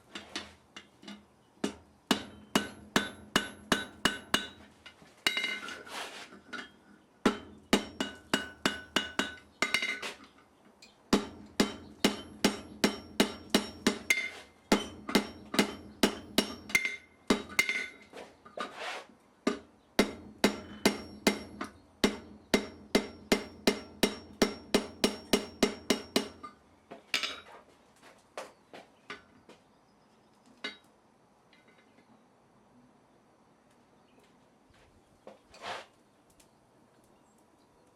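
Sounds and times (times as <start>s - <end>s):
hammer striking steel on anvil: 1.6s - 4.7s, 7.3s - 10.0s, 11.1s - 18.1s, 19.5s - 26.6s.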